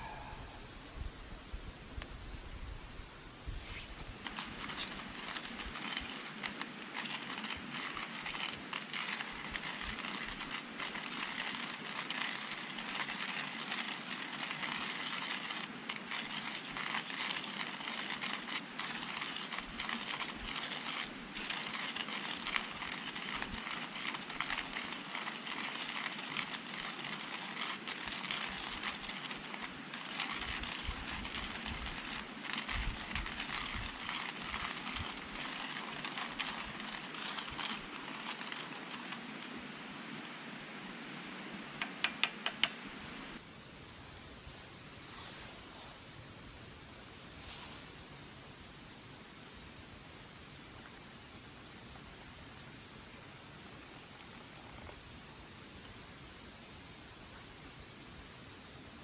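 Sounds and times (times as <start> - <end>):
firewood crackling and popping: 0.0 - 5.8.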